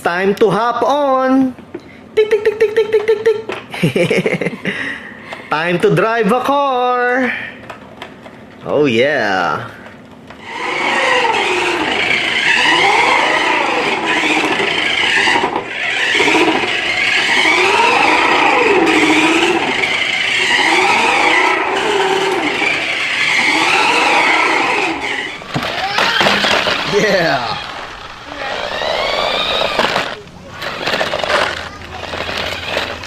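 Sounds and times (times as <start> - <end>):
electronic toy engine revving: 10.4 - 33.0.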